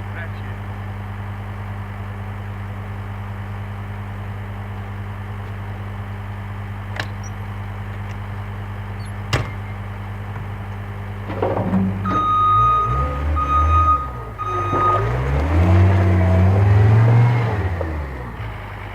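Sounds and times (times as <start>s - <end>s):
diesel engine idling: 0.0s - 18.9s
backup alarm beeping: 12.0s - 15.7s.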